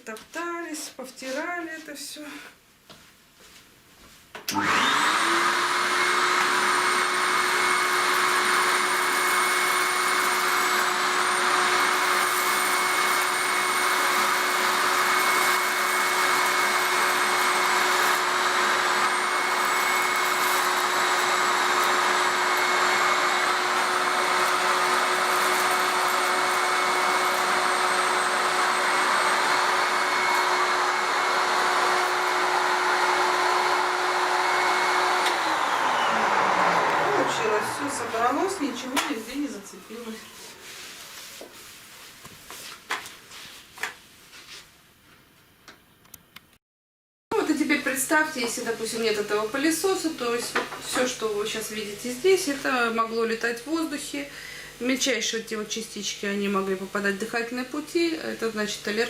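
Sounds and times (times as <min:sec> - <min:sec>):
vacuum cleaner motor whining: 0:04.5 - 0:41.5.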